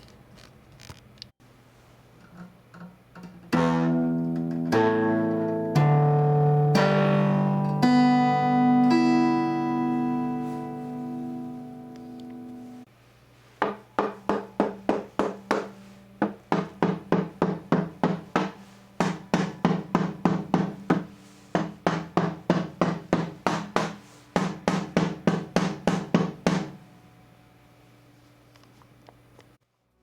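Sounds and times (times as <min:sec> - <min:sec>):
knuckle taps on acoustic guitar: 0:13.6 - 0:26.8.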